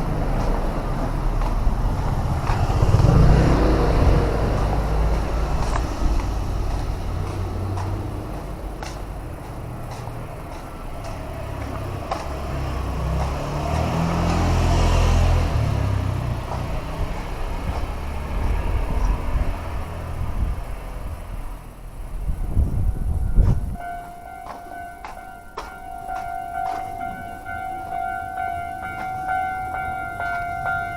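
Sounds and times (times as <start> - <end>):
vehicle rumble passing by: 0.0 - 23.9.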